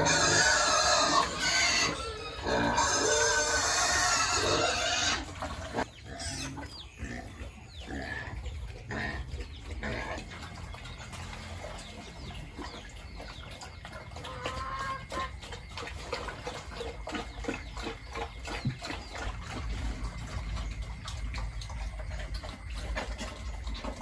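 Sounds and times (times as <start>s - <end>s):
pigs grunting: 0.0s - 24.0s.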